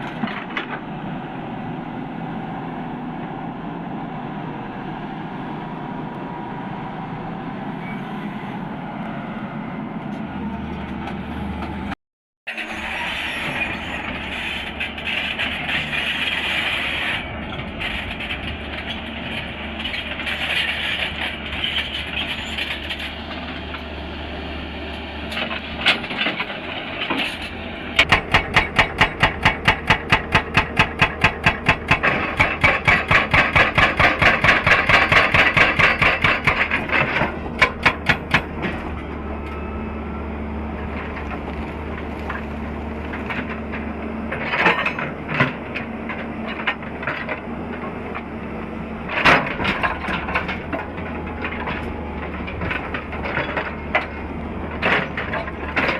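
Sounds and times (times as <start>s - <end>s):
excavator engine running: 12.6s - 55.9s
hydraulic breaker hammering rock: 28.0s - 38.7s.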